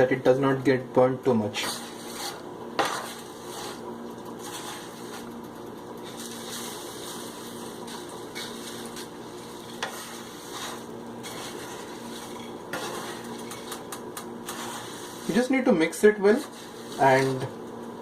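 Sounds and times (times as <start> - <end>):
low sizzle of frying: 0.0 - 18.0
spatula scraping rice in pan: 1.6 - 5.3, 6.0 - 15.5, 16.4 - 17.4.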